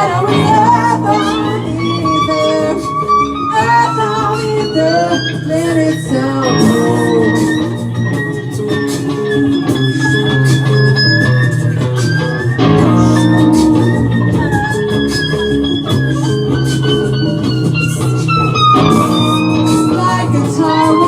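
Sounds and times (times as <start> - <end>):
electric guitar: 0.0 - 21.0
steady bass line: 0.0 - 21.0.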